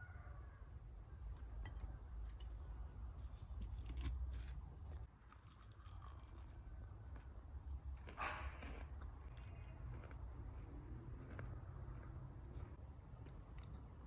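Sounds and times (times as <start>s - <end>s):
crunching and tearing fried food: 3.4s - 14.0s.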